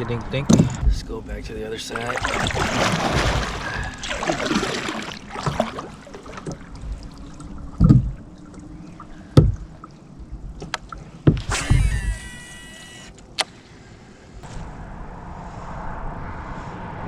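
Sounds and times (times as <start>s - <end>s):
paddle splashing water: 1.8s - 11.7s
water dripping: 1.9s - 11.4s
dull knocks: 7.8s - 8.2s, 9.4s - 9.7s.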